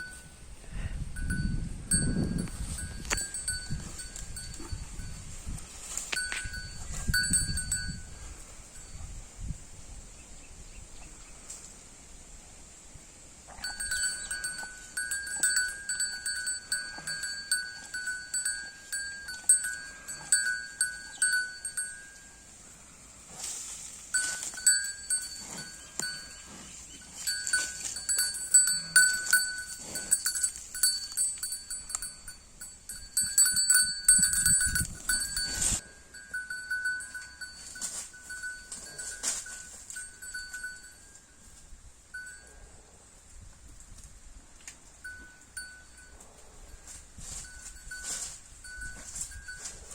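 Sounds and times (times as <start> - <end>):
small metal bell jingling: 1.2 - 8.2, 13.6 - 22.4, 24.1 - 41.3, 45.0 - 49.9.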